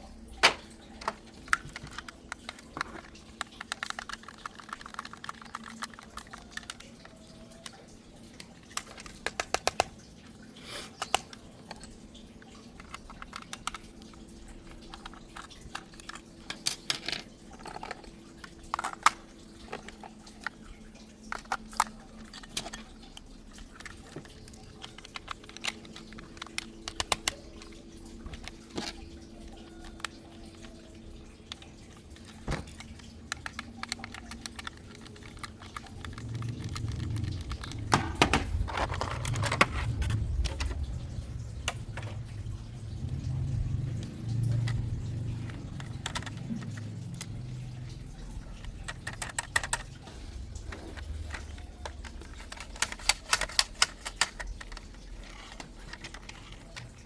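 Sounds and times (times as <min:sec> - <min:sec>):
faint steady hum: 0:00.0 - 0:57.0
hard plastic clicking and rattling: 0:00.4 - 0:10.1, 0:10.9 - 0:57.0.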